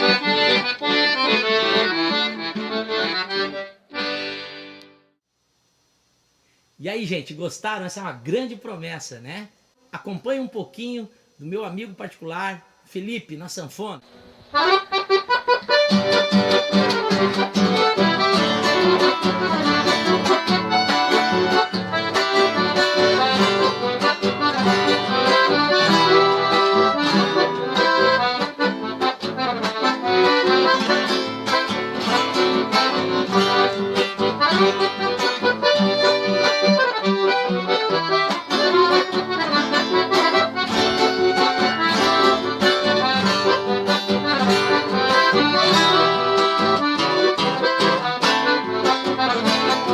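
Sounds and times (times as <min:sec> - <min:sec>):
accordion playing a tune: 0:00.0 - 0:05.2, 0:14.6 - 0:49.9.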